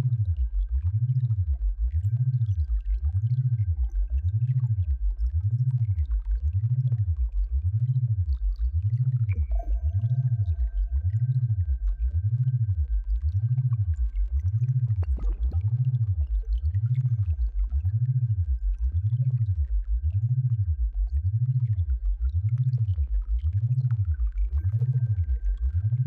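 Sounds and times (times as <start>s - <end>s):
low pulsing pitch-sliding drone: 0.0s - 26.0s
faint steady high tone: 9.3s - 12.8s.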